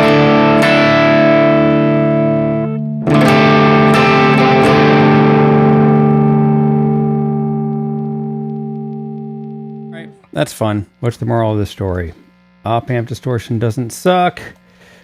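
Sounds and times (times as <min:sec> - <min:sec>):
distorted electric guitar chords: 0:00.0 - 0:11.2.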